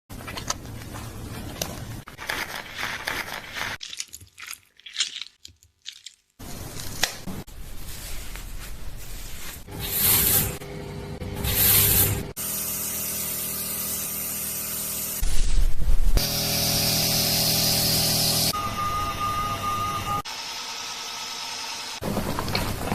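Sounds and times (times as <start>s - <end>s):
fingers scrubbing hair and scalp: 0.3s - 4.6s.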